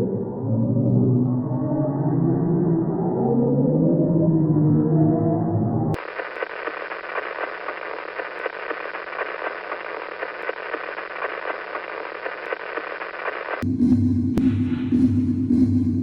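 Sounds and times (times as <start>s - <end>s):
crackling radio static: 6.0s - 13.6s
faint steady hum: 6.0s - 13.6s.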